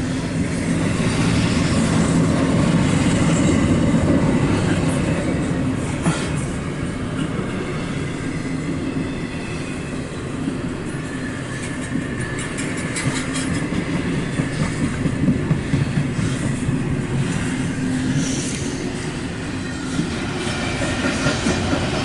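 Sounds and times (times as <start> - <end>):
freight train rumbling past: 0.0 - 22.0
wheels clicking over rail joints: 11.5 - 17.5.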